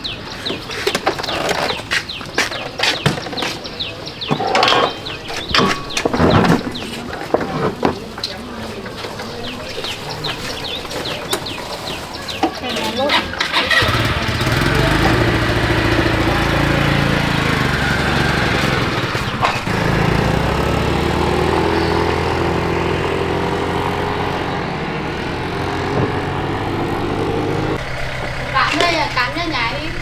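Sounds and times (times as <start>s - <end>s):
vehicle engine running: 13.4s - 30.0s.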